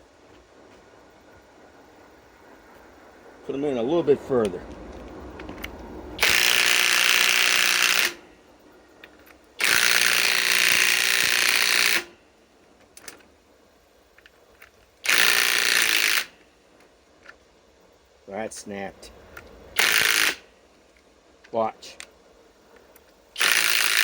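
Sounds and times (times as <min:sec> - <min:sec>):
impact wrench hammering screw: 0:06.2 - 0:08.2, 0:09.6 - 0:12.1, 0:15.0 - 0:16.3, 0:19.8 - 0:20.4, 0:23.4 - 0:24.0
screw snapping: 0:06.2 - 0:08.2, 0:23.4 - 0:24.0.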